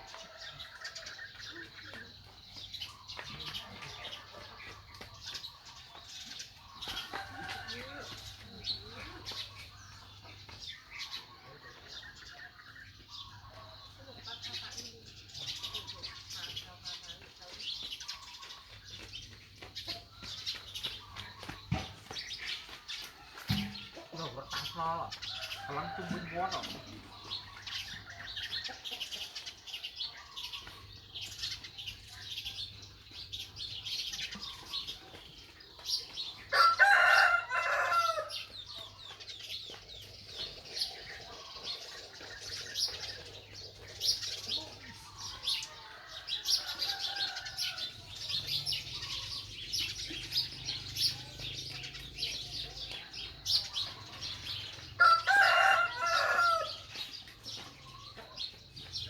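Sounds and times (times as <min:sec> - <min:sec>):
small birds chirping: 0:00.0 - 0:59.0
rooster crowing: 0:36.5 - 0:38.4, 0:55.0 - 0:56.9.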